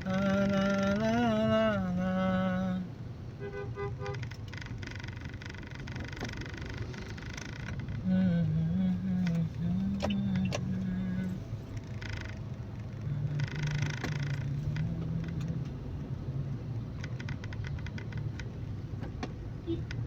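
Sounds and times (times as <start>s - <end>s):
man humming: 0.0s - 2.9s, 8.0s - 11.6s, 13.0s - 15.8s
car cabin rumble: 0.0s - 20.0s
light clicks and rattles: 4.0s - 15.8s, 16.9s - 20.0s.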